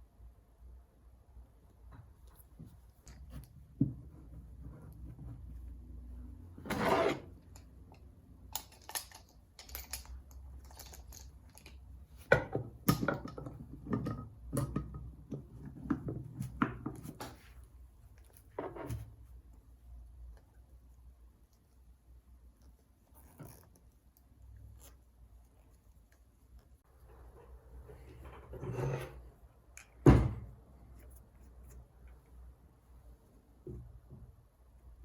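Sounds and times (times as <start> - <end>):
tools knocking and clicking: 7.5 - 17.1.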